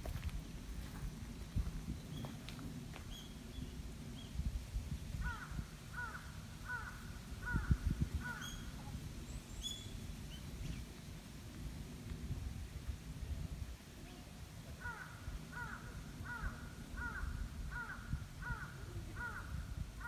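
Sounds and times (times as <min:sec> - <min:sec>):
small birds chirping: 0:01.4 - 0:04.4, 0:07.5 - 0:11.0
crow cawing: 0:05.2 - 0:08.6, 0:14.8 - 0:19.6.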